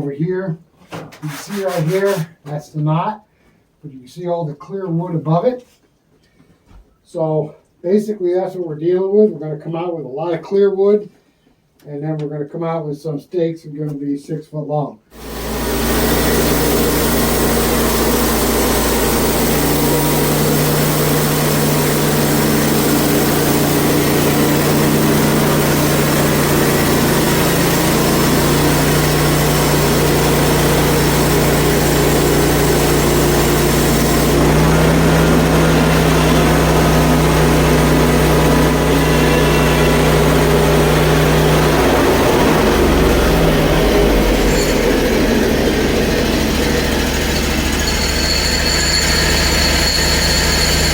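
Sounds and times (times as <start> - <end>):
bandsaw mill cutting wood: 1.2 - 2.3, 15.1 - 50.9.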